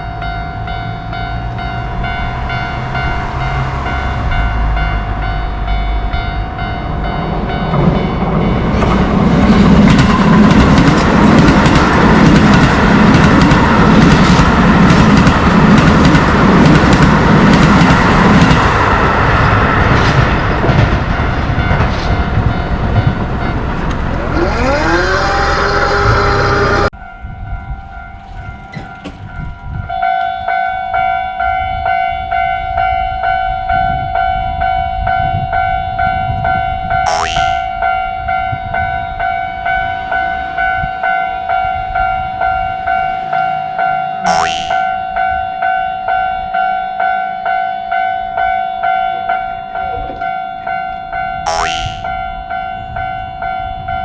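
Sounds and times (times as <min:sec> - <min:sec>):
train rumbling with rail clicking: 0:00.0 - 0:37.0, 0:45.0 - 0:51.4
crossing warning bell: 0:00.0 - 0:54.0
electric whine: 0:24.2 - 0:26.9.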